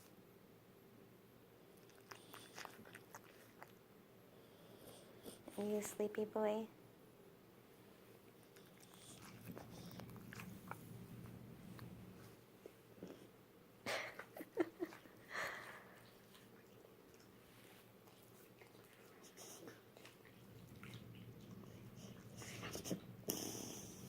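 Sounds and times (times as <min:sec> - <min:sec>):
dog breathing and snoring: 0:04.3 - 0:05.8, 0:08.5 - 0:11.4, 0:18.1 - 0:24.0.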